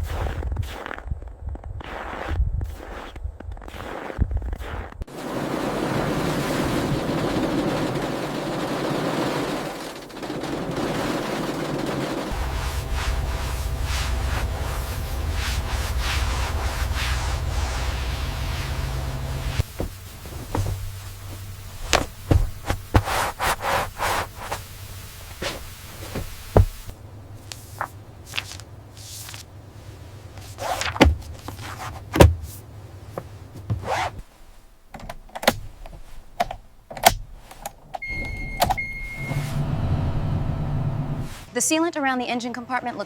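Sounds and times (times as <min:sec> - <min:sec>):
knocks clicks and thuds: 0:05.9 - 0:23.6, 0:25.3 - 0:29.6, 0:30.3 - 0:38.9.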